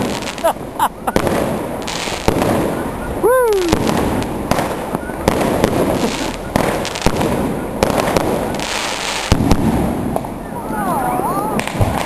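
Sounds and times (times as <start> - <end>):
street noise: 0.0 - 12.0
firework cake bangs: 1.1 - 3.0, 3.6 - 10.4, 11.6 - 12.0.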